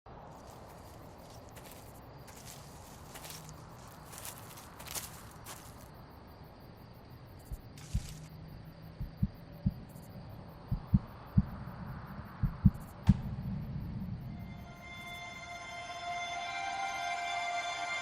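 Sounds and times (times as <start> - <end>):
low dull thuds: 9.0 - 10.0, 10.7 - 11.6.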